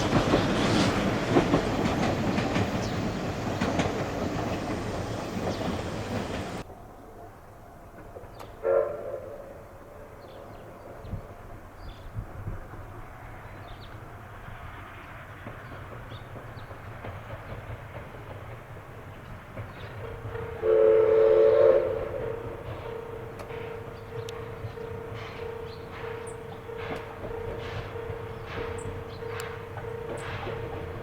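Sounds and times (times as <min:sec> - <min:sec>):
low rumble of running train: 0:00.0 - 0:31.0
steam locomotive whistle: 0:08.6 - 0:10.2, 0:20.1 - 0:31.0.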